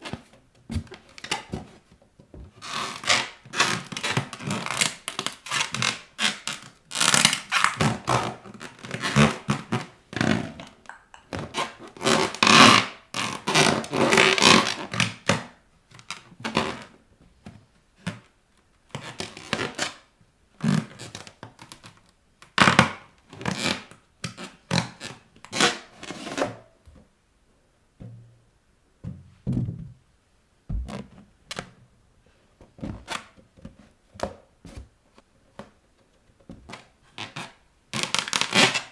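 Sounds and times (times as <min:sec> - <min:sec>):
rubber balloons scraping and rubbing: 0:02.5 - 0:15.3
balloons thudding under bare feet: 0:30.7 - 0:31.2.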